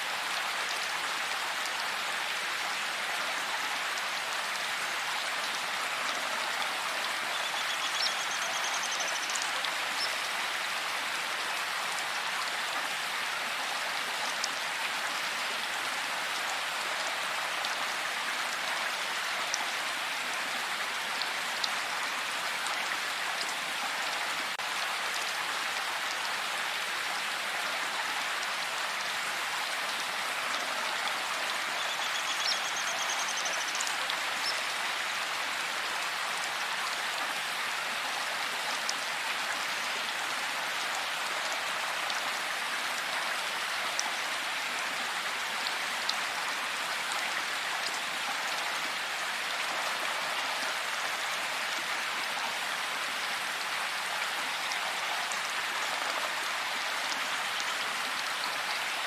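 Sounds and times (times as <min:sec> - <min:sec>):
heavy rain in forest: 0:00.0 - 0:59.0.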